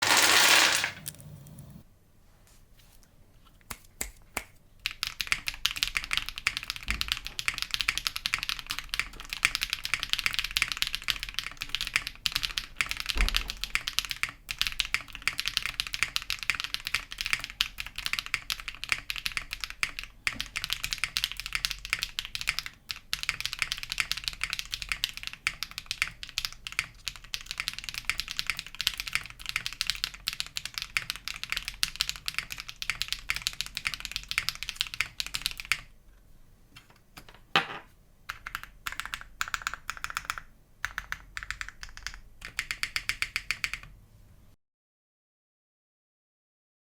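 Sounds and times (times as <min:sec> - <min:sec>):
fast mechanical keyboard typing: 0:04.8 - 0:35.9, 0:38.3 - 0:44.0.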